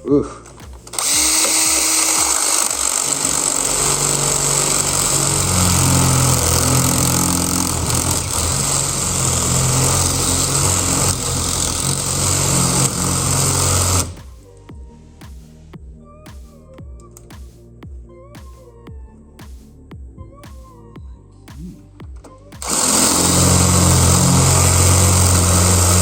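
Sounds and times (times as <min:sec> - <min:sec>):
power drill boring into metal: 0:00.5 - 0:14.2, 0:22.6 - 0:26.0.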